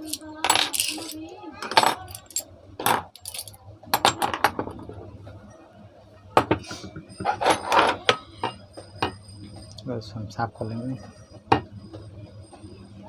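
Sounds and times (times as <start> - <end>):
metal parts clinking and clattering: 0.0 - 4.6, 7.2 - 8.2.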